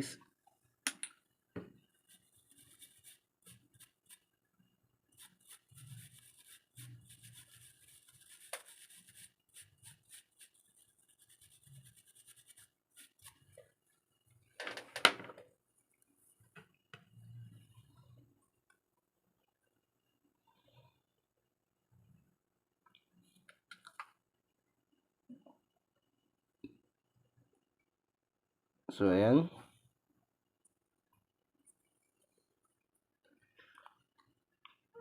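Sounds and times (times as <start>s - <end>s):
scrubbing on circuit board: 2.0s - 4.3s, 5.2s - 13.6s.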